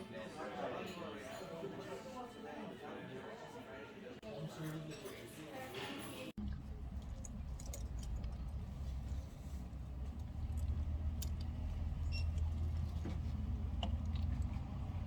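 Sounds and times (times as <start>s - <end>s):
vehicle engine rumbling: 6.4s - 15.0s.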